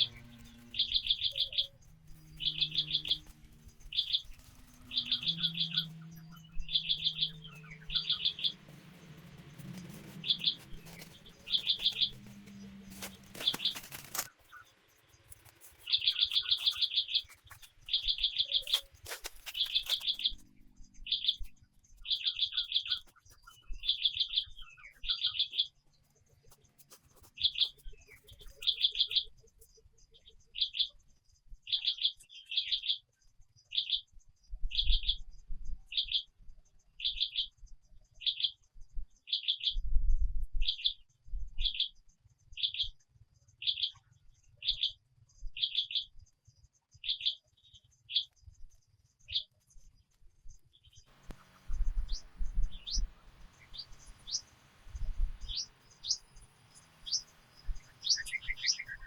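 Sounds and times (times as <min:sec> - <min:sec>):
low hum: 0:00.0 - 0:14.3
bird trilling chirps: 0:00.0 - 0:14.7, 0:15.4 - 0:20.5, 0:51.2 - 0:59.0.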